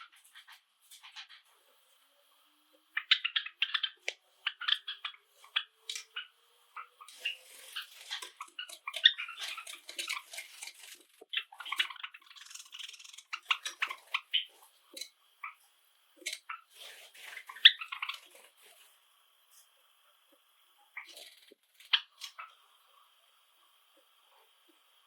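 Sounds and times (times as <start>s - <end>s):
sparrows chirping and twittering: 0.0s - 1.6s, 2.9s - 18.9s, 20.8s - 22.7s.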